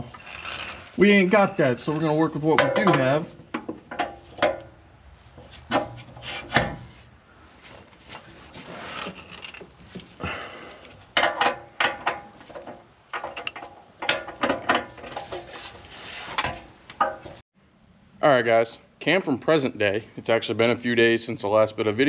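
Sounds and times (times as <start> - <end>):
ratchet clicking and scraping: 0.0 - 2.1.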